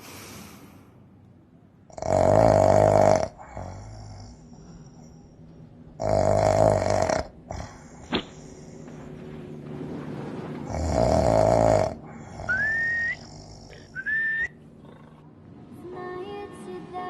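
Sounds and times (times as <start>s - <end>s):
person snoring: 1.9s - 5.0s, 6.0s - 8.8s, 10.7s - 14.0s
whistling breath: 12.3s - 14.6s
music: 15.5s - 17.0s.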